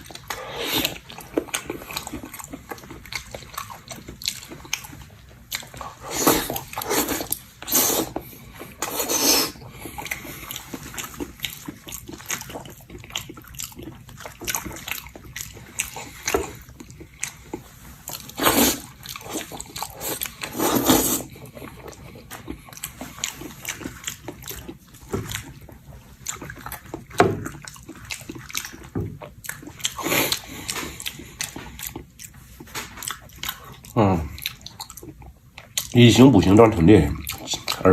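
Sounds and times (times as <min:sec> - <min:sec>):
wet chewing and lip smacking: 0:00.0 - 0:36.3, 0:37.2 - 0:37.9
wet sucking noises: 0:05.9 - 0:08.2, 0:08.8 - 0:09.6, 0:18.3 - 0:19.0, 0:19.9 - 0:21.3.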